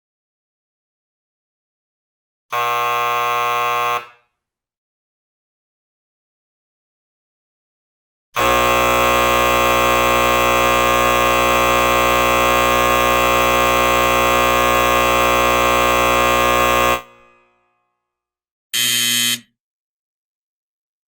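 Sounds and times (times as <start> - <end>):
electric buzzer tone: 2.5 - 4.3, 8.4 - 17.6, 18.8 - 19.5.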